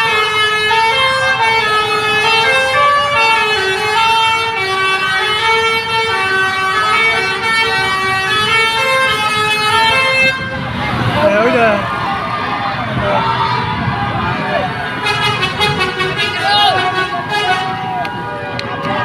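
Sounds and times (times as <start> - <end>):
air horns playing a melody: 0.0 - 10.8, 14.8 - 18.0.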